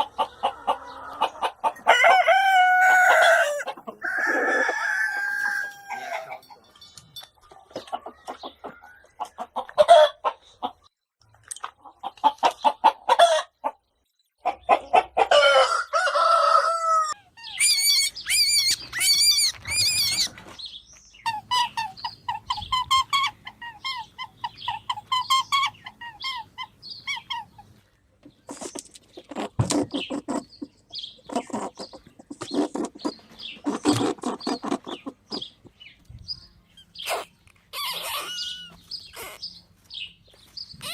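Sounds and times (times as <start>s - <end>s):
animal calls: 17.0s - 20.6s, 36.8s - 39.7s.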